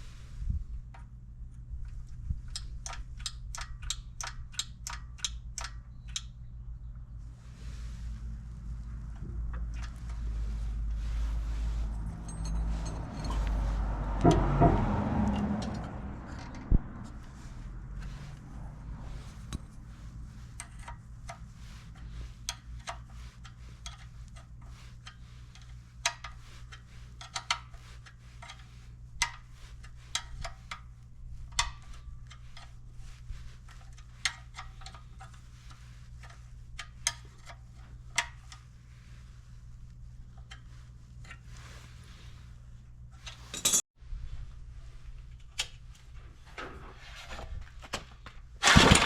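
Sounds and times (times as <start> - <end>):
metallic clicks of small tools: 2.4 - 6.4.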